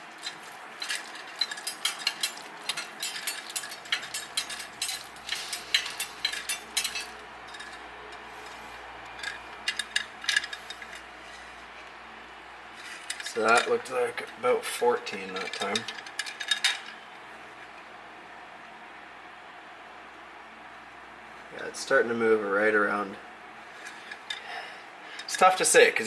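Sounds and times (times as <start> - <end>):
light metallic clicks and rattles: 0.0 - 11.5, 15.1 - 17.0.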